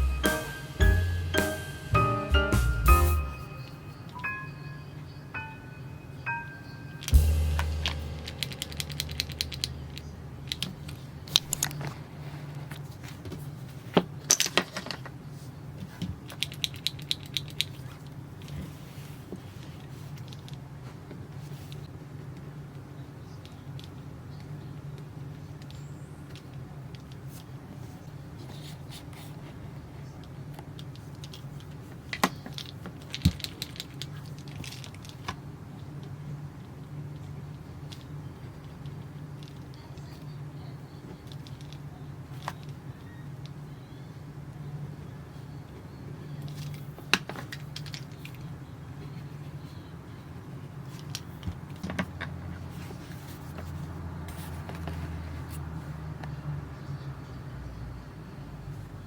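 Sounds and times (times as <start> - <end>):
steady low hum: 6.8 - 12.2.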